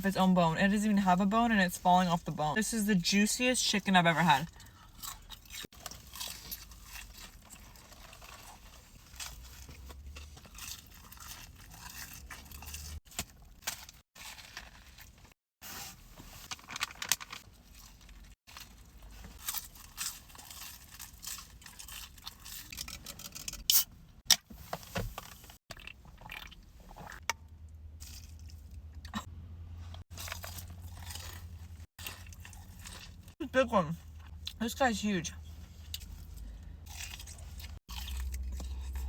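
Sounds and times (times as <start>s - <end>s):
crunching fried chicken: 4.5s - 15.4s, 16.4s - 23.4s, 30.1s - 33.4s, 35.9s - 39.0s.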